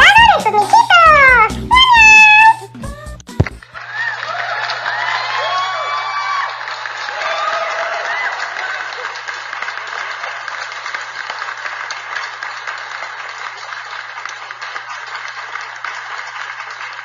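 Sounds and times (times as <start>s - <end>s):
crowd applause: 3.7s - 17.0s.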